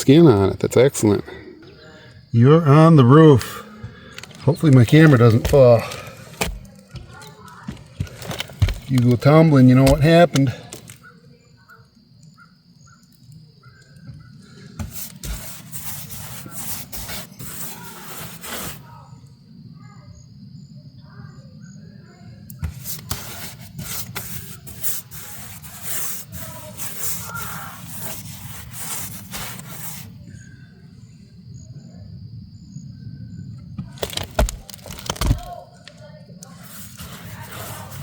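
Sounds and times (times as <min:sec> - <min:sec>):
faint birds calling: 0:00.0 - 0:34.0
paintbrush scraping on wood: 0:03.4 - 0:11.0, 0:14.4 - 0:18.9, 0:22.6 - 0:30.3, 0:36.4 - 0:38.0.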